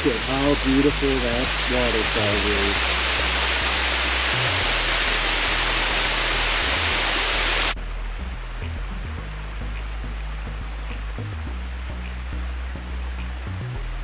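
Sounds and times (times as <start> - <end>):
waterfall rushing: 0.1 - 7.8.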